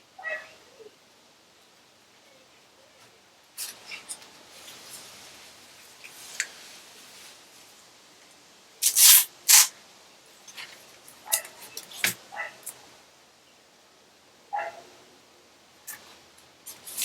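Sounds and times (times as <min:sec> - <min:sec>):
dog yips: 0:00.2 - 0:00.6, 0:14.6 - 0:14.8
compressed air blasts: 0:08.8 - 0:09.7.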